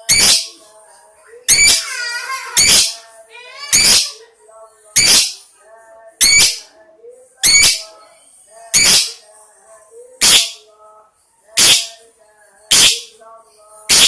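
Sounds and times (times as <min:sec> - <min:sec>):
lovebird shrill notes: 0:00.0 - 0:00.5, 0:01.5 - 0:01.9, 0:02.5 - 0:03.0, 0:03.7 - 0:04.2, 0:05.0 - 0:05.4, 0:06.2 - 0:06.6, 0:07.4 - 0:07.9, 0:08.8 - 0:09.2, 0:10.2 - 0:10.6, 0:11.6 - 0:11.9, 0:12.7 - 0:13.1
soft warbling chatter: 0:00.0 - 0:14.0.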